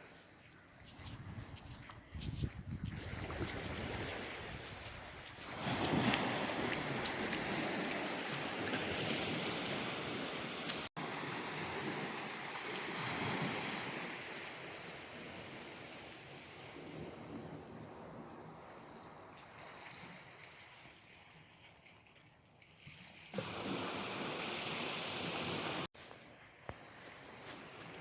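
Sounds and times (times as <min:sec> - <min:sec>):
wind: 0:00.0 - 0:28.0
surf washing onto beach: 0:23.3 - 0:25.9.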